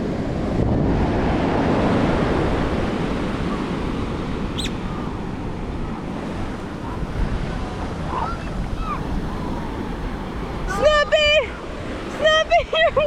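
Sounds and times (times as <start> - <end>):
ocean surf washing on shore: 0.0 - 13.0
short high chirp: 4.6 - 4.8.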